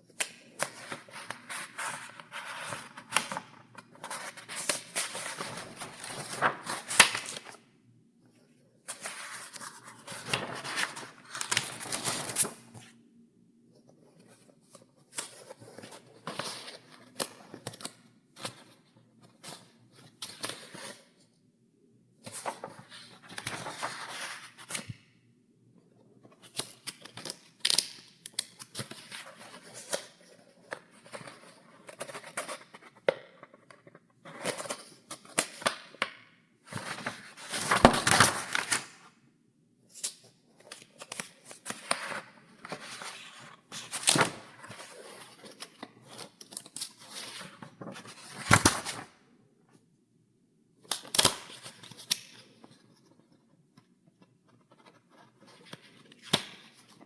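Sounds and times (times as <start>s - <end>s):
paper pages turning: 0.2s - 7.6s, 8.9s - 12.8s, 22.2s - 24.9s, 36.7s - 39.0s, 40.6s - 49.1s.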